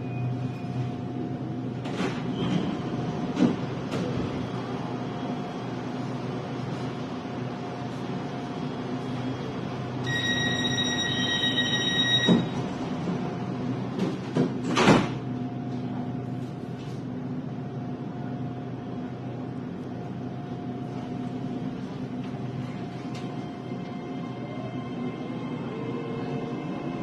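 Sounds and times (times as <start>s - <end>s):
train carriage hum: 0.0s - 27.0s
train door warning beep: 10.0s - 12.7s.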